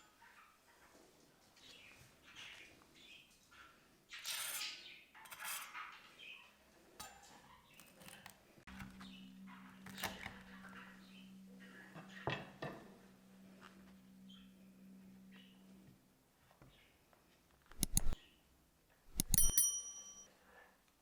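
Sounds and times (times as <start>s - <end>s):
steady low hum: 8.7s - 16.2s
dishes and utensils clinking: 19.1s - 20.2s.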